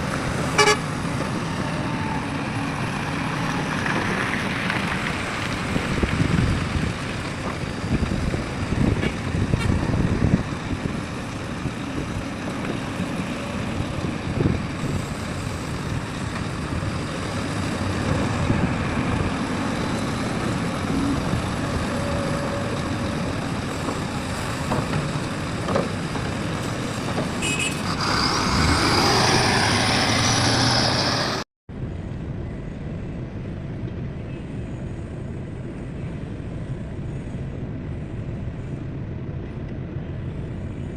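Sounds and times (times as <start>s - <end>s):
diesel machinery running: 0.0s - 32.0s.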